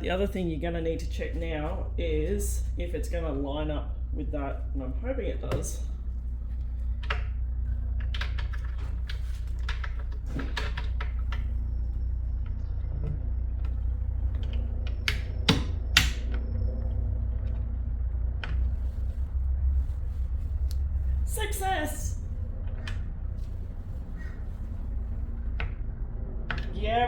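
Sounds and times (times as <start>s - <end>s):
steady low hum: 0.0s - 27.0s
drawer lock clicks and knocks: 14.9s - 16.3s.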